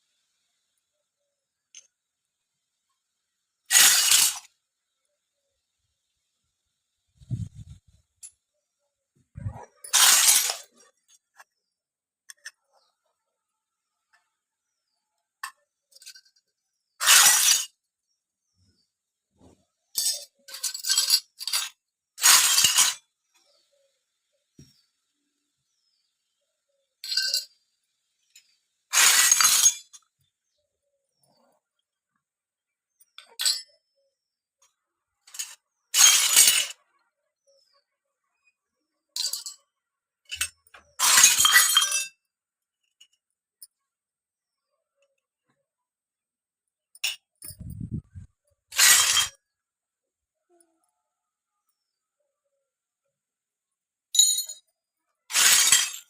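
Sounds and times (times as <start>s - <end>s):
toy pieces clattering: 3.7s - 4.5s, 9.8s - 11.2s, 15.4s - 17.8s, 19.9s - 23.0s, 27.0s - 27.5s, 28.3s - 30.1s, 35.2s - 36.8s, 39.2s - 39.6s, 40.3s - 42.1s, 48.7s - 49.4s, 55.3s - 56.0s
toy pieces clinking: 3.7s - 4.5s, 9.8s - 10.9s, 20.0s - 23.0s, 48.7s - 49.4s, 55.3s - 56.0s.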